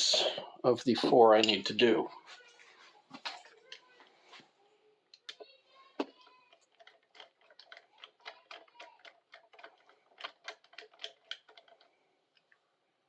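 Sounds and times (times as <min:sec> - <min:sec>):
small tools clicking on metal parts: 0:06.2 - 0:12.0.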